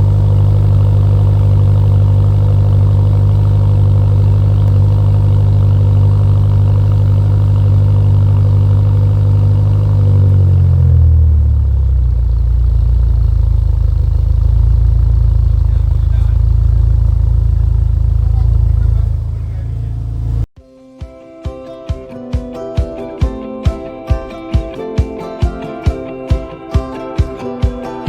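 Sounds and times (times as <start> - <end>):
car engine running: 0.0 - 20.5.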